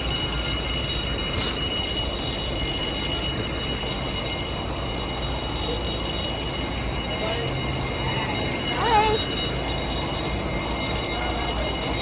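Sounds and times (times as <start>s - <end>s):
fire alarm ringing: 0.0s - 12.0s.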